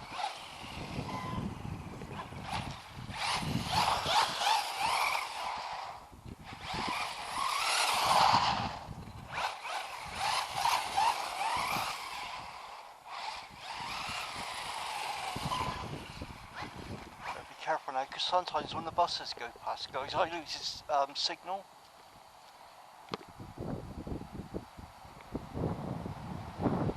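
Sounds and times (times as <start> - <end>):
electric rc car motor whining: 0.0 - 17.9.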